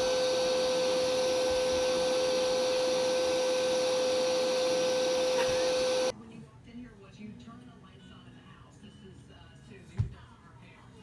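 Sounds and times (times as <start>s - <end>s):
small electric motor whirring: 0.0s - 6.1s.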